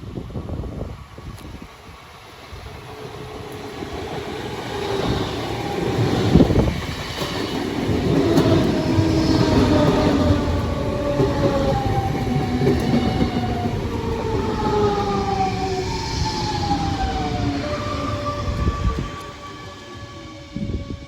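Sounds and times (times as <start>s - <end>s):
train running noise: 0.0s - 21.0s.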